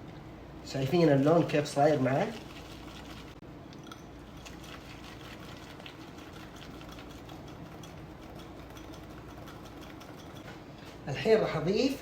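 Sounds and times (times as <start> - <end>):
steady low hum: 0.0 - 12.0
utensil scraping a bowl: 6.1 - 10.6.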